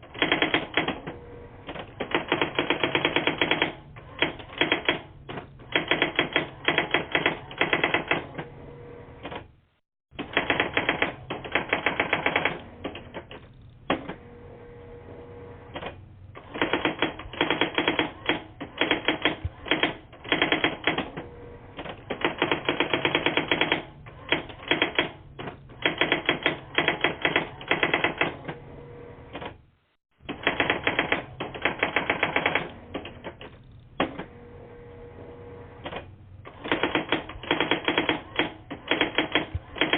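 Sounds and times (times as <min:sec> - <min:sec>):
typewriter-like clacking over phone: 0:00.0 - 0:01.1, 0:01.7 - 0:08.3, 0:10.2 - 0:14.1, 0:15.8 - 0:21.2, 0:21.8 - 0:25.2, 0:25.8 - 0:28.4, 0:30.2 - 0:34.2, 0:35.8 - 0:39.9.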